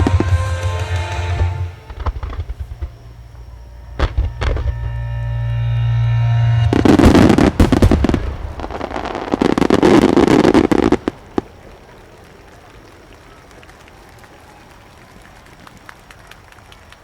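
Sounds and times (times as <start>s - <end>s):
fireworks bursting and crackling: 0.0s - 17.0s
held music chord: 3.4s - 7.8s.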